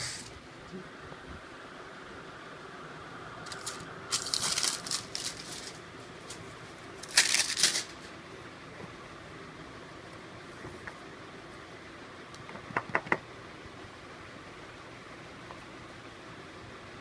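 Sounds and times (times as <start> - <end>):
packaging crinkling: 3.5 - 8.1.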